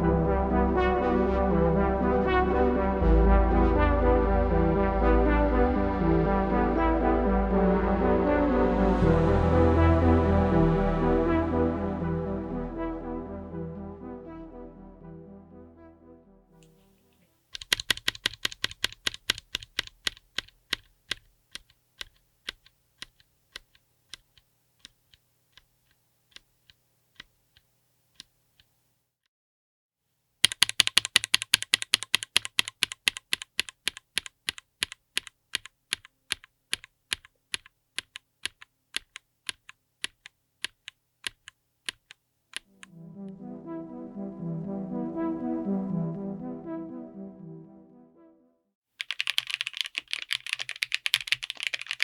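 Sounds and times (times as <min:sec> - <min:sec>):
typing on mechanical keyboard: 0:17.5 - 0:28.7, 0:30.4 - 0:42.9, 0:49.0 - 0:52.0.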